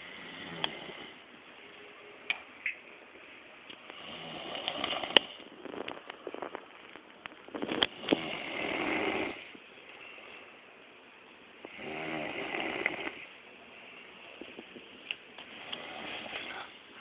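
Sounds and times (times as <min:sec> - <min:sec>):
person snoring: 0:00.0 - 0:01.2, 0:04.0 - 0:05.4, 0:07.9 - 0:09.5, 0:11.7 - 0:13.3, 0:15.5 - 0:16.7.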